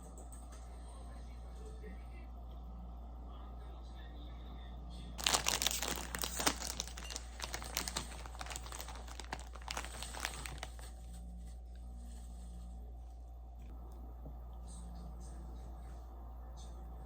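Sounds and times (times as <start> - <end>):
low steady hum: 0.0 - 17.0
crinkly rustling by hand: 5.2 - 12.8.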